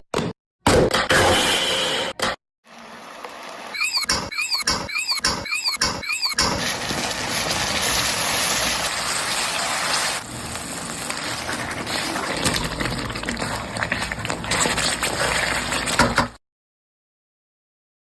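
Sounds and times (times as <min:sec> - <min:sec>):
food sizzling in a pan: 0:06.6 - 0:16.1.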